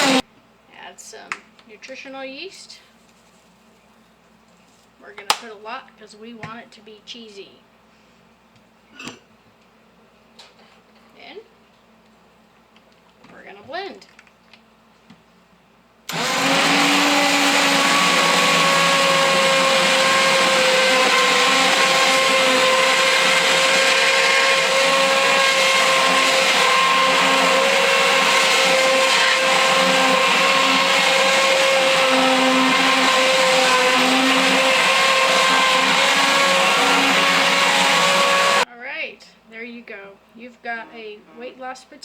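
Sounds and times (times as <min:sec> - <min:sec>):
immersion blender motor whine: 0:00.0 - 0:00.2, 0:16.1 - 0:38.6.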